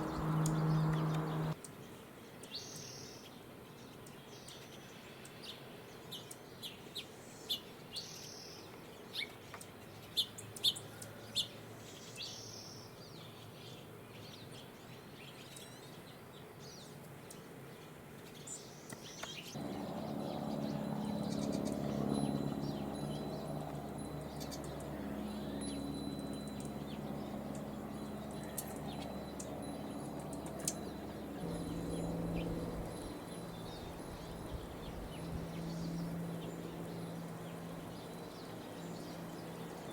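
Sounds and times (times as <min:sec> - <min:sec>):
low droning hum: 0:00.0 - 0:01.6, 0:19.6 - 0:39.9
songbirds chirping: 0:00.0 - 0:39.9.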